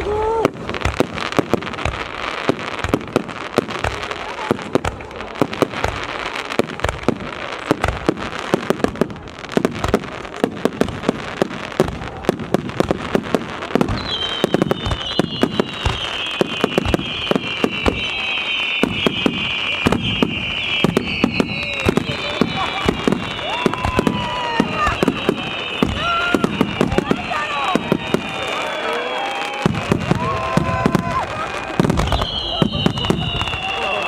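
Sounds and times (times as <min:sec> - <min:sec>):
fireworks bangs and crackling: 0:00.0 - 0:34.0
shrill firework whistle: 0:13.8 - 0:34.0.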